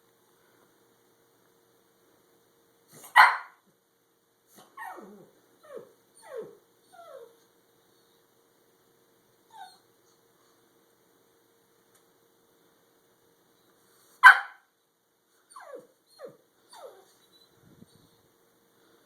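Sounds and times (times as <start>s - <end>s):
dog barking: 3.0s - 3.6s, 14.2s - 14.7s
dog whining yelps: 3.0s - 3.6s, 4.6s - 7.4s, 9.5s - 9.9s, 15.5s - 17.6s
small dog yip: 3.0s - 3.6s, 4.7s - 7.3s, 14.2s - 14.6s.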